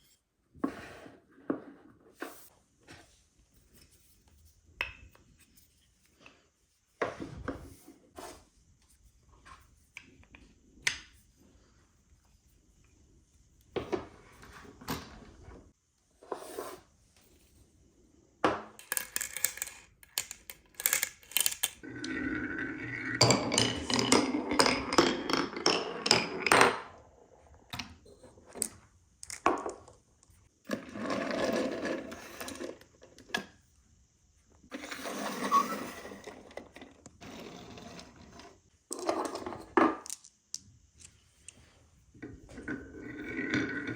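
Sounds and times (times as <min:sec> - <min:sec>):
marbles clicking on wooden track: 0:18.8 - 0:26.9
marbles rolling rumble: 0:18.9 - 0:27.4, 0:30.7 - 0:32.8, 0:42.4 - 0:43.9.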